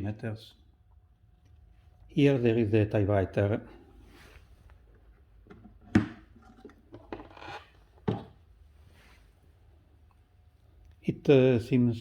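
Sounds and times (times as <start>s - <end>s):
typewriter case rubbing and scraping: 6.4s - 7.8s.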